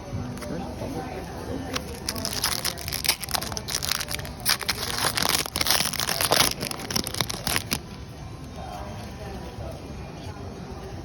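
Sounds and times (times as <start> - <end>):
foil wrapper crinkling and tearing: 1.7 - 7.9.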